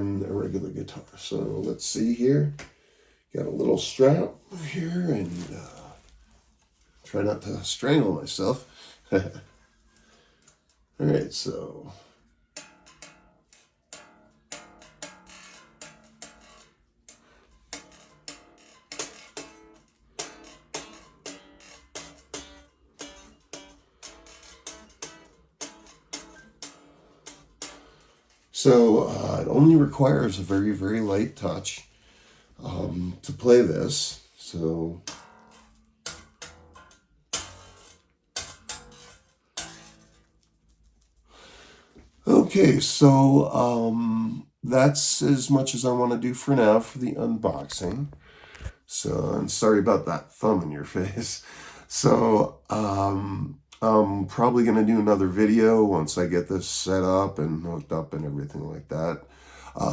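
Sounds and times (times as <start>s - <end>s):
tapped string notes: 3.4s - 44.4s, 45.0s - 50.6s.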